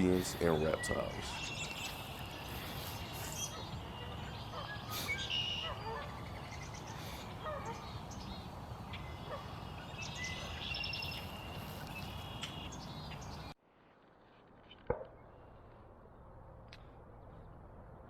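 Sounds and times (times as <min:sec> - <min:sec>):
small birds chirping: 0:00.0 - 0:13.6.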